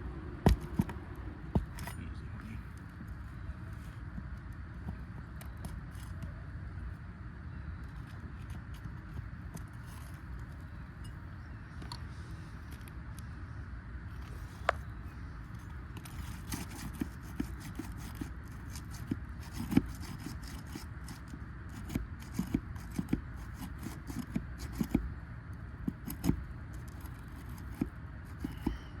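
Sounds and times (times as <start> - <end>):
low background noise: 0.0 - 29.0
metal tool scraping shingles: 16.0 - 25.0.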